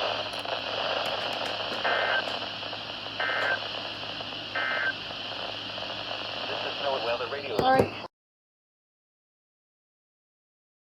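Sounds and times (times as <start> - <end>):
radio hiss: 0.0 - 8.1.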